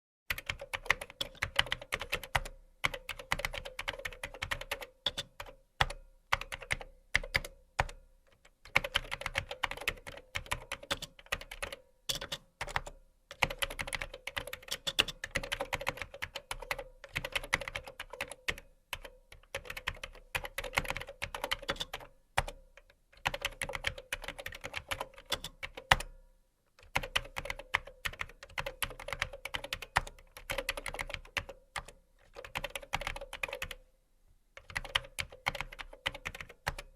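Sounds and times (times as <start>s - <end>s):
computer keyboard typing: 0.3s - 26.1s, 26.8s - 33.8s, 34.6s - 36.9s.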